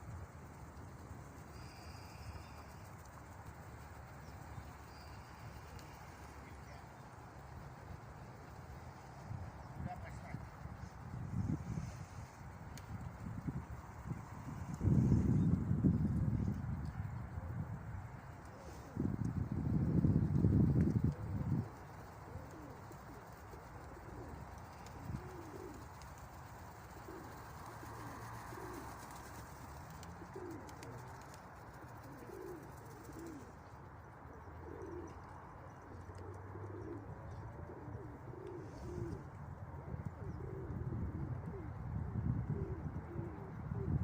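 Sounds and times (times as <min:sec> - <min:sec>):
strong wind rumble: 0:09.3 - 0:18.1, 0:19.0 - 0:21.8, 0:40.8 - 0:44.0
pigeons cooing: 0:20.9 - 0:44.0.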